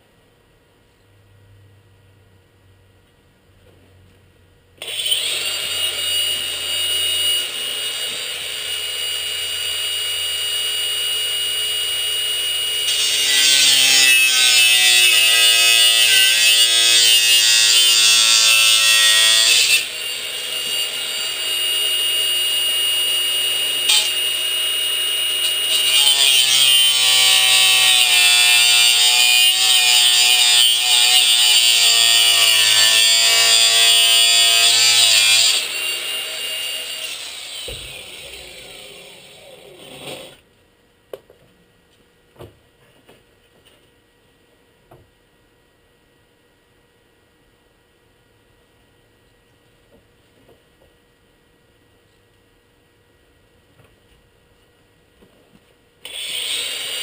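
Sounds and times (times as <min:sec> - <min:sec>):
grinder cutting sheet metal: 0:04.8 - 0:40.4, 0:56.0 - 0:57.0
grinder whining: 0:04.8 - 0:40.4, 0:56.0 - 0:57.0.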